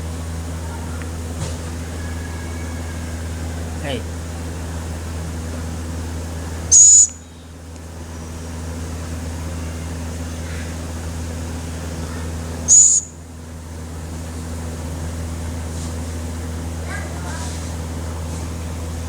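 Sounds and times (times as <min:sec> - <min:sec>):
steady low hum: 0:00.0 - 0:19.0
owlet hissing screeches: 0:06.7 - 0:07.2, 0:12.7 - 0:13.1.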